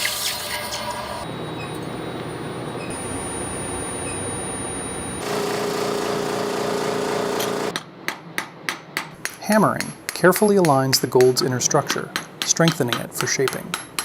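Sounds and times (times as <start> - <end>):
motor hum: 1.2 - 7.8
steady machine noise: 1.2 - 7.8.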